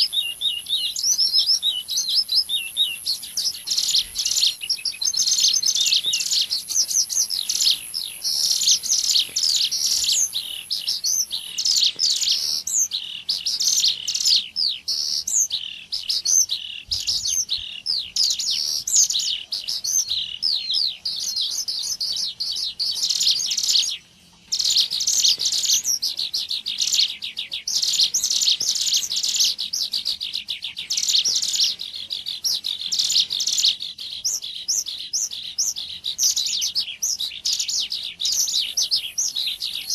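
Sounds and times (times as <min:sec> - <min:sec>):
bird chirps and trills: 0:00.0 - 0:39.9.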